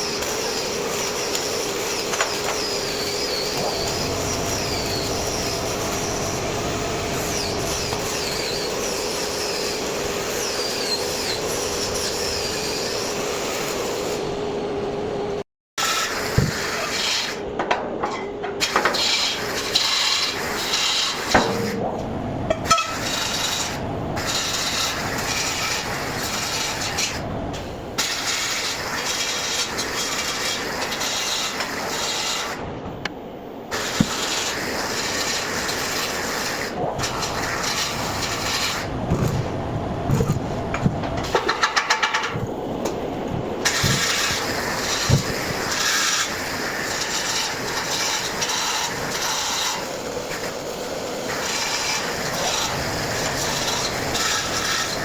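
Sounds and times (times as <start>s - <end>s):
welder arc crackling and sizzling: 0.0s - 12.3s, 22.8s - 32.6s, 33.7s - 55.0s.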